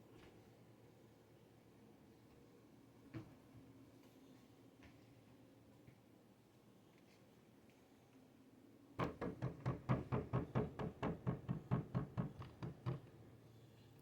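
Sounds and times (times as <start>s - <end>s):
rapid knocking on a hard surface: 9.0s - 13.1s.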